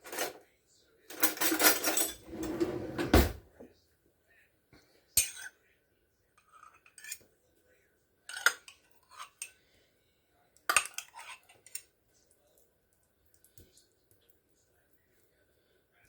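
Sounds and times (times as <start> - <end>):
metal utensil scraping a jar: 6.4 - 7.2, 10.7 - 11.8.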